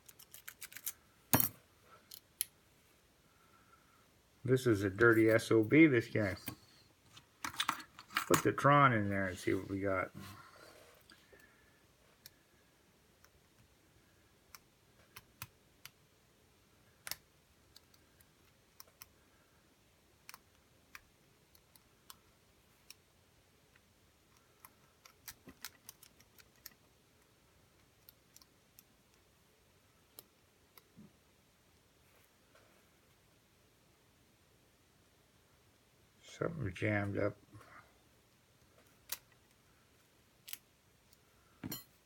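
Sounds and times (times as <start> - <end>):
lock pick metallic clicks: 0.0 - 1.5.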